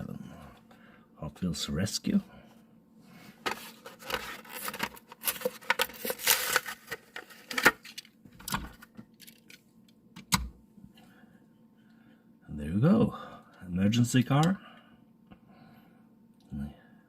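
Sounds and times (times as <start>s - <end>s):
plastic and cardboard crackling: 3.4s - 9.6s.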